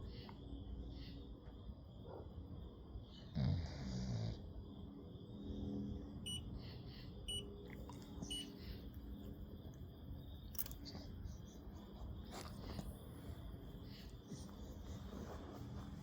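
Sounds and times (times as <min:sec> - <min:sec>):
puppy breathing and snoring: 0:03.2 - 0:04.6.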